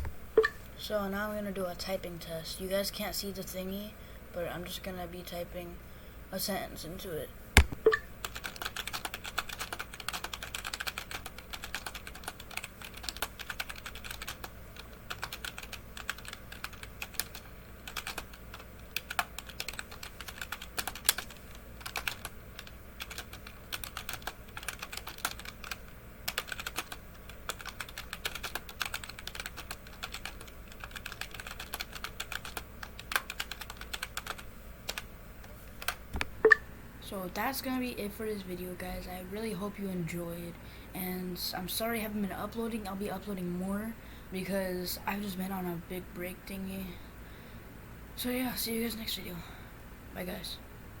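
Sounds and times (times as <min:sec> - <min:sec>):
keyboard typing: 0:07.6 - 0:35.1.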